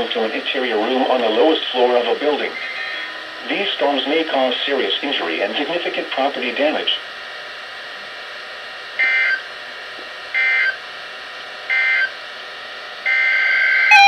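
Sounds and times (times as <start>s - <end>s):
faint radio hiss: 0.0s - 7.2s
buzzy two-tone data chirps: 9.0s - 9.4s, 10.4s - 10.8s, 11.7s - 12.1s, 13.1s - 14.0s.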